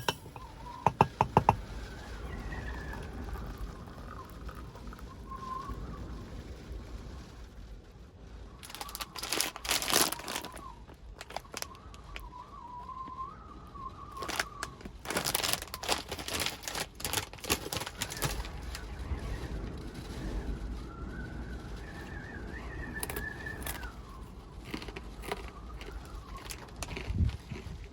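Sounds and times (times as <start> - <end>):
thin wavering whistle: 0.0 - 6.2, 8.6 - 16.2, 17.5 - 24.6, 25.2 - 26.9
packaging crinkling: 8.6 - 12.3, 14.1 - 18.9, 24.6 - 27.8.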